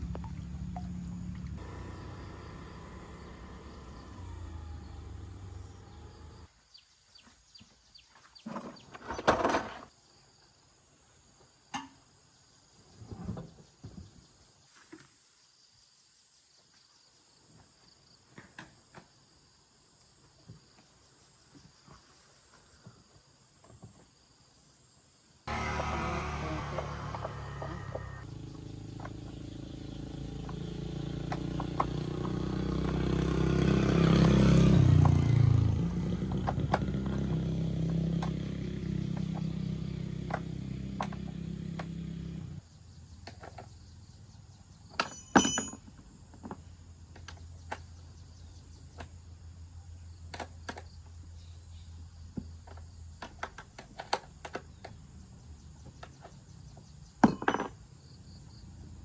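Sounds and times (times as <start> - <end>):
motor humming: 0.0 - 6.5, 25.5 - 28.2
knocks and clinks: 11.8 - 12.0, 45.0 - 46.0, 57.2 - 57.8.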